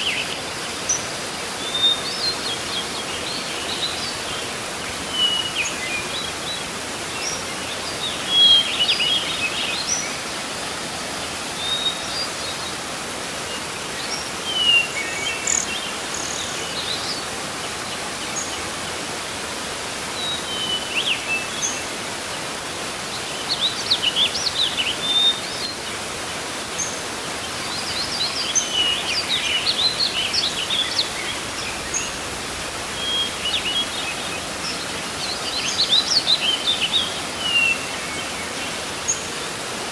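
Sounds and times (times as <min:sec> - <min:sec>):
waterfall rushing: 0:00.0 - 0:39.9
birds chirping: 0:26.8 - 0:39.4.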